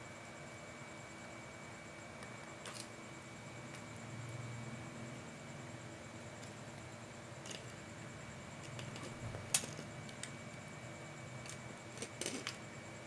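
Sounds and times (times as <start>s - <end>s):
small parts and tools clicking: 7.4s - 7.8s, 8.6s - 10.7s, 11.4s - 12.7s.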